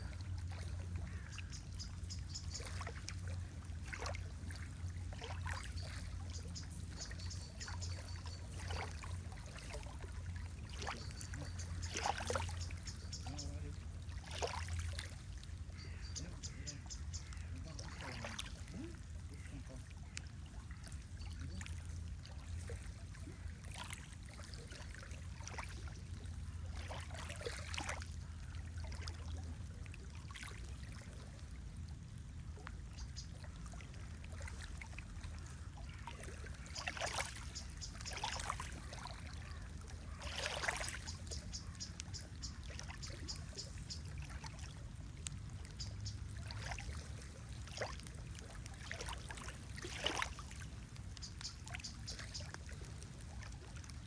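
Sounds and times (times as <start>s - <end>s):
steady low rumble: 0.0s - 14.2s
water lapping and sloshing: 0.0s - 54.0s.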